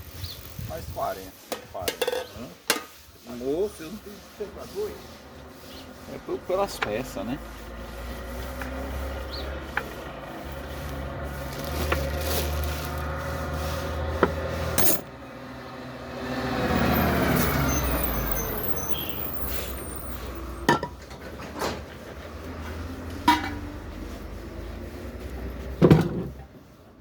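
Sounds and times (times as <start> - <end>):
sharp knocks and clanks: 1.5 - 2.9
road vehicle passing by: 3.2 - 27.0.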